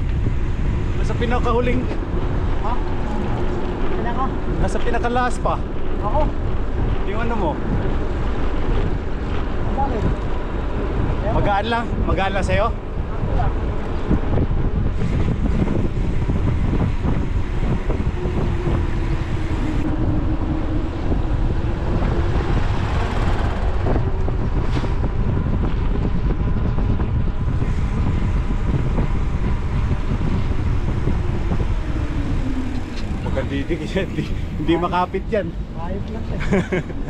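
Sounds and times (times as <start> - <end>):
wind buffeting microphone: 0.0 - 37.0.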